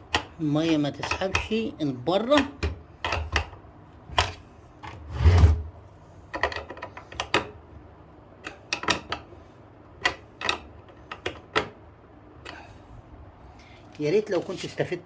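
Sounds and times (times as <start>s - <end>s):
clicks and knocks of parts: 0.0s - 5.0s, 6.3s - 7.6s, 8.4s - 9.4s, 10.0s - 11.8s
scrape: 5.0s - 5.6s.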